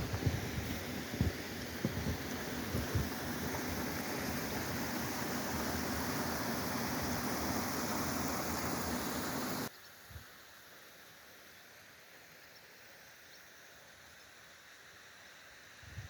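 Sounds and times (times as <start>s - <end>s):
waterfall rushing: 0.0s - 9.7s
background hiss: 0.0s - 16.0s.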